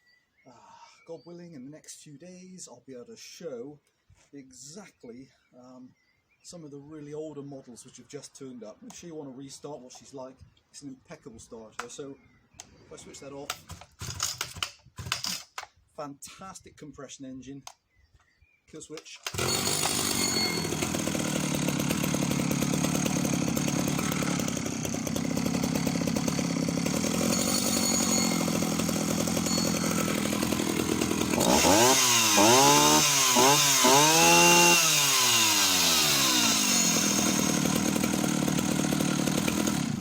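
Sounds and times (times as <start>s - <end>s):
chainsaw engine idling and revving: 13.5s - 15.5s, 19.2s - 40.0s.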